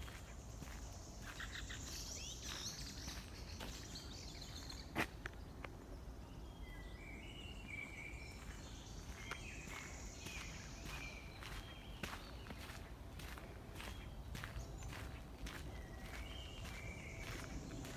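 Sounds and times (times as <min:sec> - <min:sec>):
footsteps in forest: 0:00.0 - 0:06.0, 0:07.3 - 0:17.9
birds chirping: 0:06.5 - 0:17.9.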